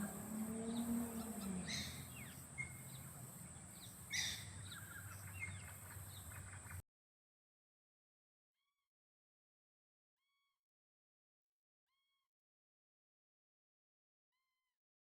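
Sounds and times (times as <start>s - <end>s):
birds chirping and whistling: 0.0s - 6.8s.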